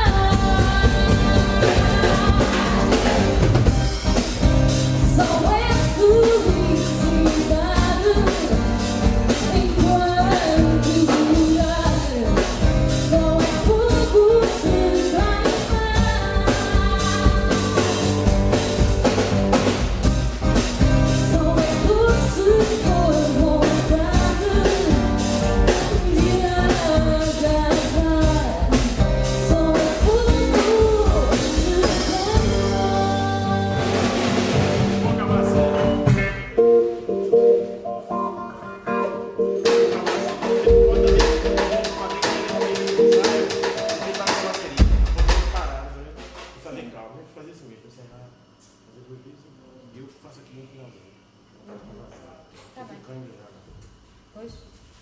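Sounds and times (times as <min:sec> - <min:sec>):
guitar and bass: 0:00.0 - 0:43.6
drum kit beat: 0:00.0 - 0:46.9.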